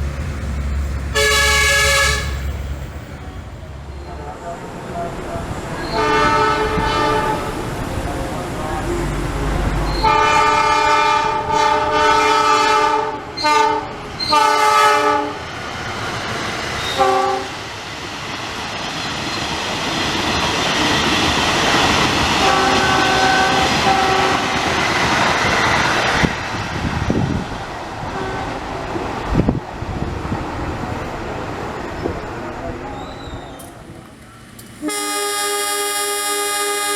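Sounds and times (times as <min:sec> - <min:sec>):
train passing rumble: 0:00.0 - 0:36.9
locomotive air horn: 0:01.1 - 0:02.6, 0:05.8 - 0:07.6, 0:10.0 - 0:15.4, 0:17.0 - 0:17.6, 0:22.4 - 0:24.5, 0:34.8 - 0:36.9.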